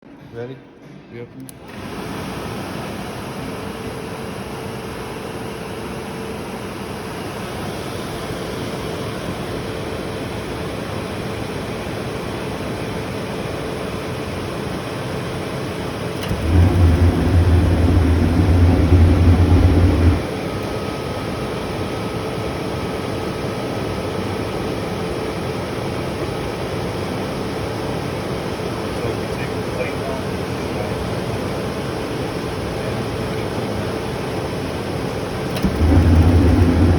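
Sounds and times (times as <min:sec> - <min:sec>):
furnace blower whoosh: 0:16.1 - 0:20.8, 0:34.7 - 0:36.9
loud low buzz: 0:16.2 - 0:20.3, 0:35.5 - 0:36.9.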